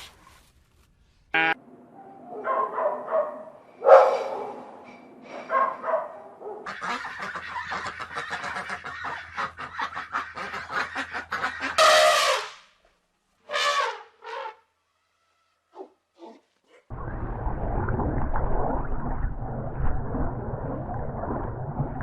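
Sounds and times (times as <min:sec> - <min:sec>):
waterfowl calling: 0:06.7 - 0:11.9.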